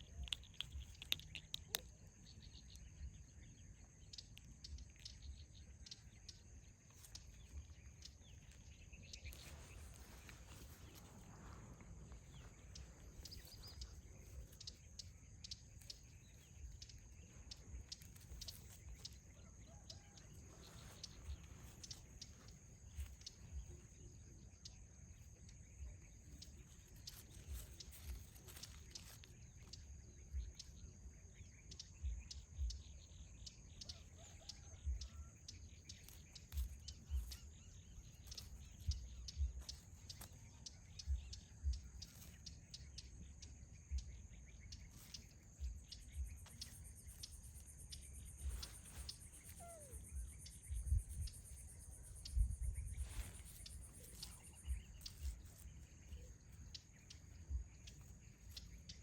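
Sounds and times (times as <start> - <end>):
small clicks and taps: 0.0 - 2.1.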